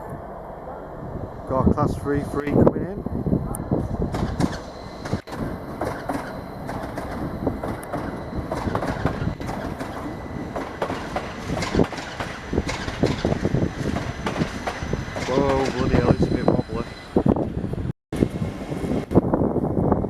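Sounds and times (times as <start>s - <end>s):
train rumble: 0.0s - 20.0s
train wheels clattering: 4.1s - 16.3s.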